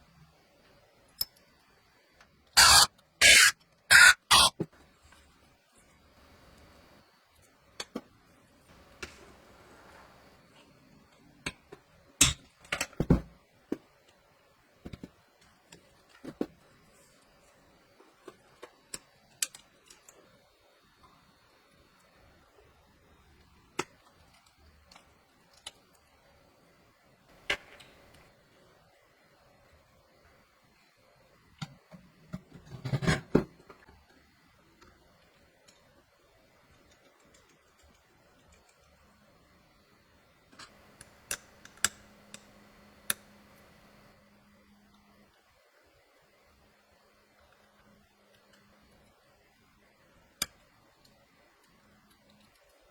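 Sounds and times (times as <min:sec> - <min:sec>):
small parts clicking and knocking: 0:02.2 - 0:04.6, 0:36.6 - 0:39.1.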